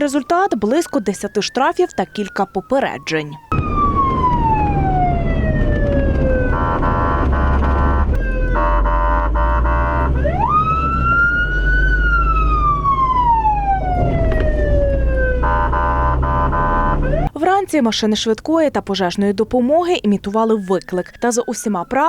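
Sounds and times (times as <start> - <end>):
electronic siren: 0.0 - 17.4, 20.3 - 22.0
low vehicle rumble: 3.4 - 17.3.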